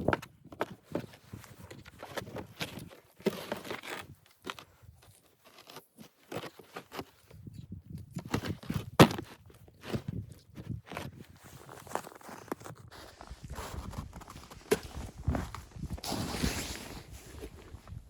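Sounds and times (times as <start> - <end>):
footsteps crunching in snow: 11.0 - 18.0.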